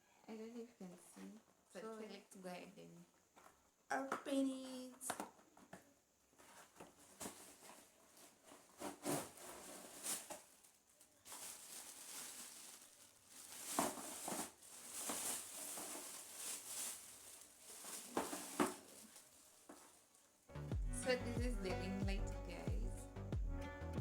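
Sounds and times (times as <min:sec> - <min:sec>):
packaging rustling and tearing: 0:06.5 - 0:20.4.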